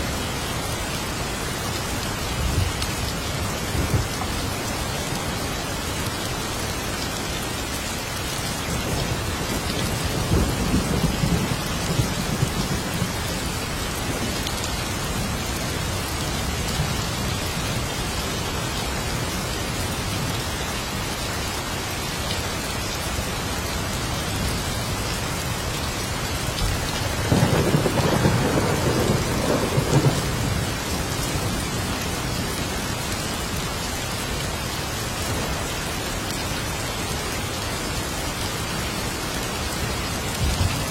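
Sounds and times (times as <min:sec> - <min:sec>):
steady heavy rain: 0:00.0 - 0:40.9
rolling thunder: 0:27.0 - 0:31.6.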